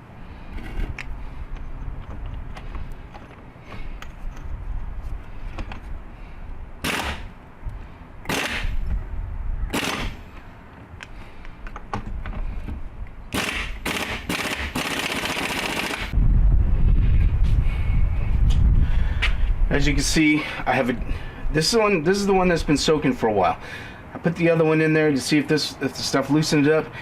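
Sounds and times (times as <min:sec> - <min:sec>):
loud low rumbling: 0:16.1 - 0:19.7.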